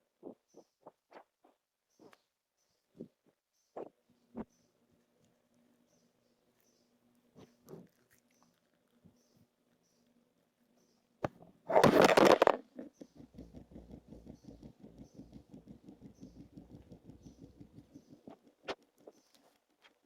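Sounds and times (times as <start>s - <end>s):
small pets rustling: 2.9s - 20.0s
patter of small taps: 12.1s - 20.0s.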